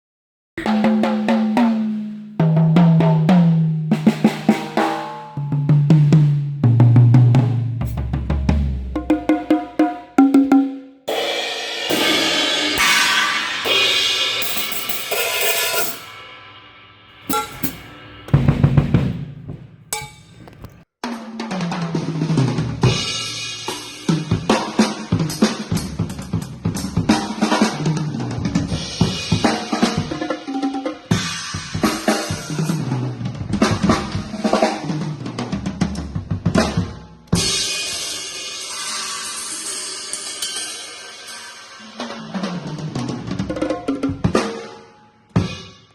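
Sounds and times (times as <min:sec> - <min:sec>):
drum strokes: 0:00.6 - 0:16.3, 0:17.1 - 0:20.8
cymbal crashes: 0:11.1 - 0:19.4.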